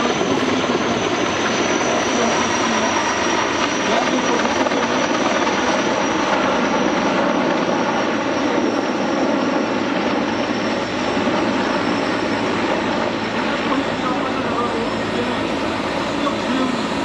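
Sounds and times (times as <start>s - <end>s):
aircraft engine overhead: 0.0s - 17.0s.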